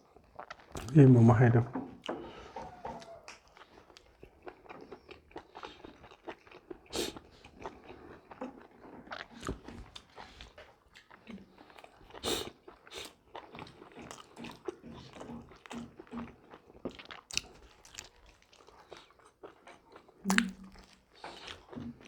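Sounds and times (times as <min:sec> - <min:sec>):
chewing and biting food: 0:00.0 - 0:01.1, 0:01.8 - 0:22.0.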